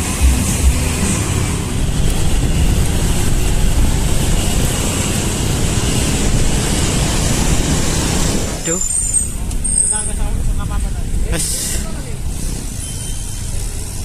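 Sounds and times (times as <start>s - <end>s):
wind rumbling on microphone: 0.0s - 8.6s
road traffic: 0.0s - 14.0s.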